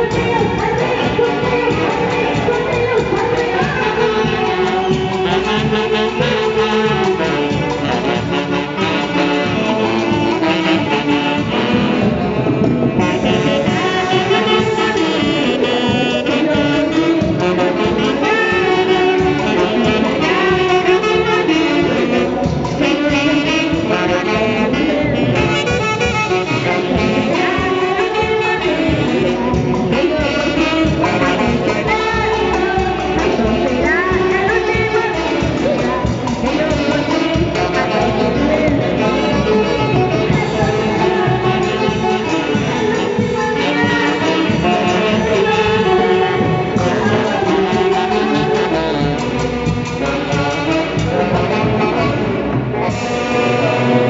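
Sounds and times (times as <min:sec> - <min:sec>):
band music with wind instruments: 0:00.0 - 0:54.0
orchestra with saxophones and horns: 0:00.0 - 0:54.0.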